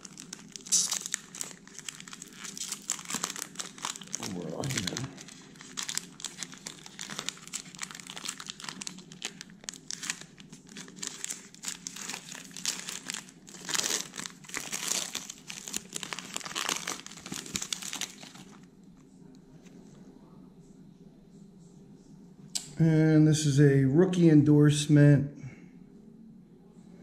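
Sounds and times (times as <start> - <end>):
foil wrapper crinkling and tearing: 0.0 - 18.7.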